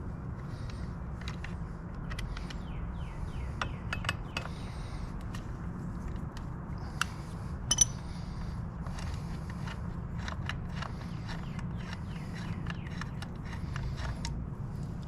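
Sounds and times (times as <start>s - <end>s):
low background rumble: 0.0s - 15.0s
metal tools clinking: 7.7s - 8.0s.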